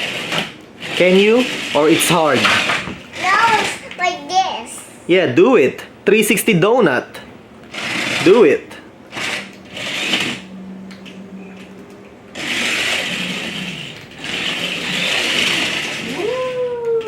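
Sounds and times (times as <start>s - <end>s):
toy electric motor whirring: 0.0s - 3.9s, 7.7s - 10.5s, 12.3s - 16.8s.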